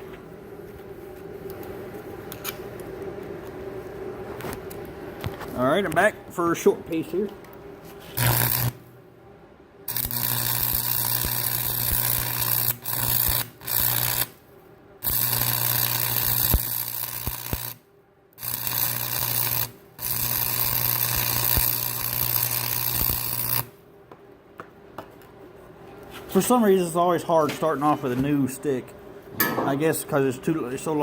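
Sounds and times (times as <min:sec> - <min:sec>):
welding arc crackling and buzzing: 0:08.1 - 0:08.9, 0:09.9 - 0:14.4, 0:15.0 - 0:23.8.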